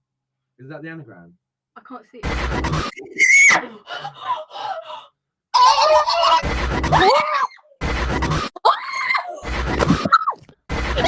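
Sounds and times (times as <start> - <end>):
distorted shrieking voice: 2.5 - 7.6
screaming: 3.0 - 7.8, 8.6 - 9.5.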